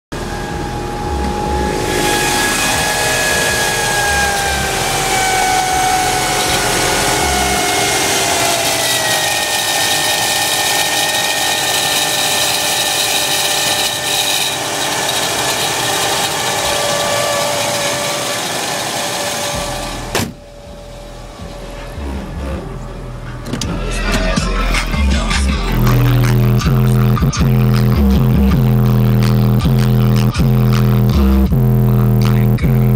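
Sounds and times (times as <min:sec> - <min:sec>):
alternator bearings grinding whine: 0:00.1 - 0:32.9.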